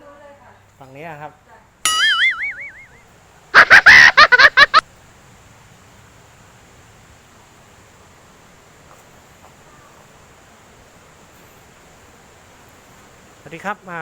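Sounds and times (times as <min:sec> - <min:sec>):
faint steady hiss: 0:00.0 - 0:14.0
high wavering pitched pulses: 0:01.9 - 0:03.0.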